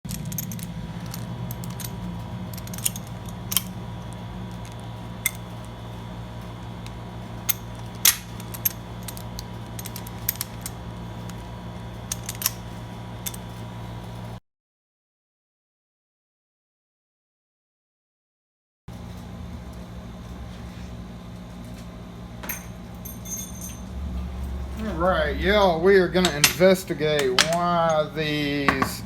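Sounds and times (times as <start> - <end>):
electrical hum: 0.0 - 14.4, 18.9 - 29.0
padlock and keys clicking: 0.1 - 5.8, 6.5 - 13.5.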